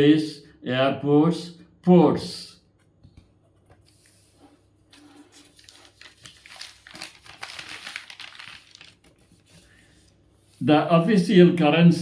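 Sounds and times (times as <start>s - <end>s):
rustling and crinkling: 3.5s - 10.6s.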